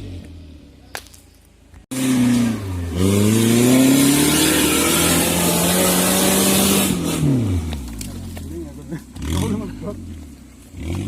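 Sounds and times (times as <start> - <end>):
car engine revving hard: 1.9 - 7.7.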